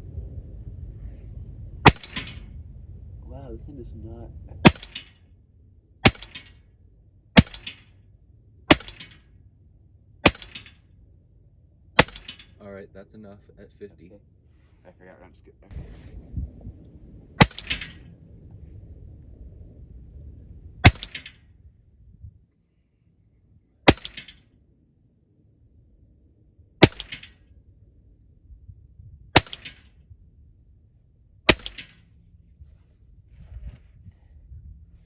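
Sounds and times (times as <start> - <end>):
air rifle shots: 1.8 - 2.5, 4.6 - 5.2, 6.0 - 6.6, 7.4 - 8.0, 8.7 - 9.3, 10.2 - 10.8, 12.0 - 12.6, 17.4 - 18.0, 20.8 - 21.4, 23.8 - 24.4, 26.8 - 27.4, 29.4 - 29.9, 31.5 - 32.0.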